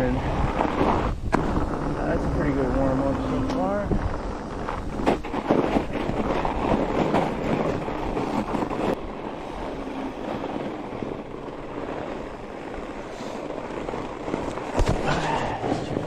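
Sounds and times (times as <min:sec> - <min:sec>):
bike tyre noise on snow: 0:00.0 - 0:16.0
snow crunches: 0:00.0 - 0:16.0
wind on microphone: 0:00.0 - 0:16.0.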